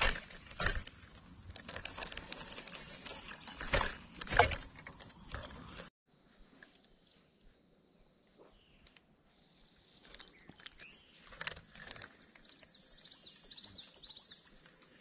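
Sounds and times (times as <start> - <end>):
bird chirping: 8.4 - 11.4, 12.1 - 14.6.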